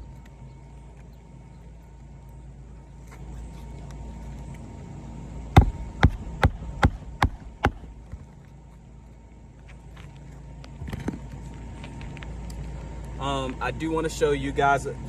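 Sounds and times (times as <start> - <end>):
hammer striking nail: 5.6 - 7.9.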